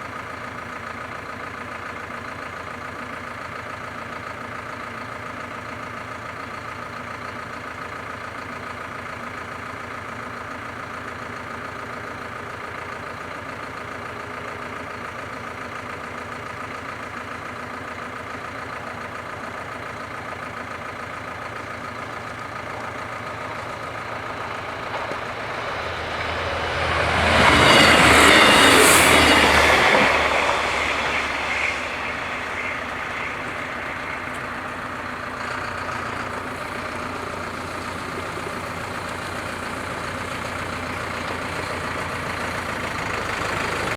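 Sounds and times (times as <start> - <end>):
diesel train passing: 0.0 - 43.9
steady hum: 23.5 - 35.2.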